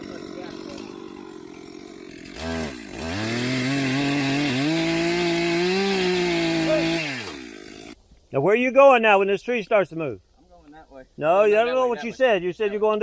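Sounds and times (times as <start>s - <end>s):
chainsaw cutting wood: 0.0s - 8.0s
chainsaw engine revving: 0.0s - 8.0s.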